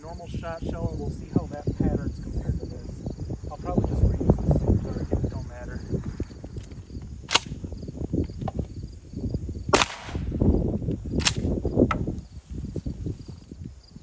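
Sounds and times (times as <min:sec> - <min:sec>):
shotgun firing: 0:07.3 - 0:07.6, 0:09.7 - 0:10.4.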